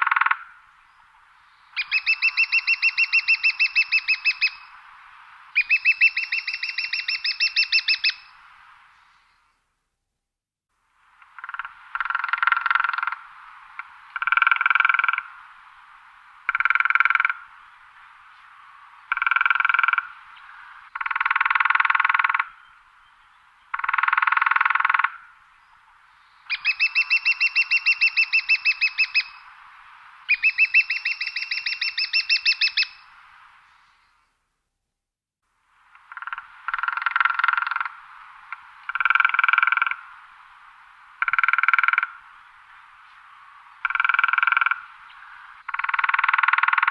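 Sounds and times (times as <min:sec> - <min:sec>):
woodpecker drumming on wood: 0:11.2 - 0:13.2, 0:19.1 - 0:20.1, 0:21.0 - 0:22.5, 0:23.7 - 0:25.2, 0:36.0 - 0:40.0, 0:41.2 - 0:42.2, 0:43.8 - 0:44.8, 0:45.6 - 0:46.9.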